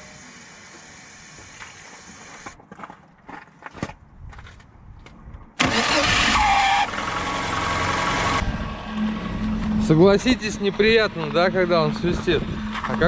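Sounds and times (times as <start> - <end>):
car starter cranking with whistle: 5.6 - 8.4
car engine running: 5.7 - 11.9.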